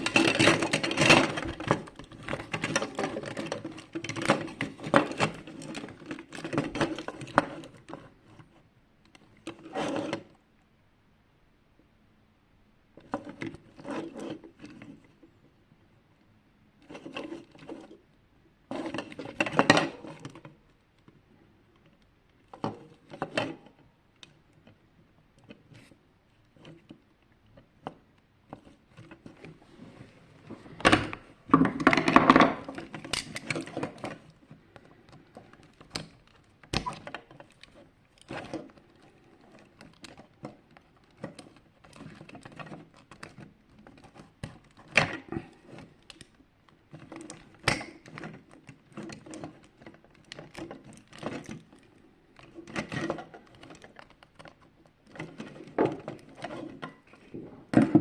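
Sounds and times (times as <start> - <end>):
plastic parts clattering and scraping: 0.0 - 8.6, 9.2 - 10.4, 13.0 - 15.2, 16.8 - 18.0, 18.6 - 21.1, 21.8 - 24.8, 25.4 - 58.0
plastic parts clicking and knocking: 0.0 - 10.4, 18.7 - 29.6, 30.4 - 58.0.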